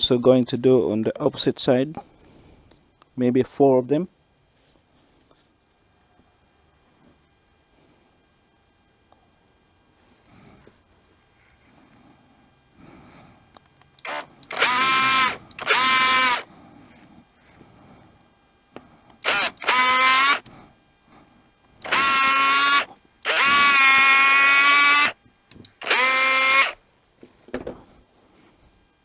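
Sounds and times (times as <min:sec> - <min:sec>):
electric drill driving screws: 0:14.0 - 0:16.5, 0:19.2 - 0:20.5, 0:21.8 - 0:26.8.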